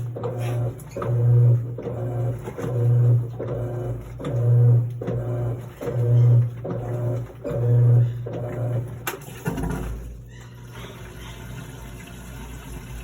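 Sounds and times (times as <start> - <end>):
washing machine motor humming: 0.0 - 13.0.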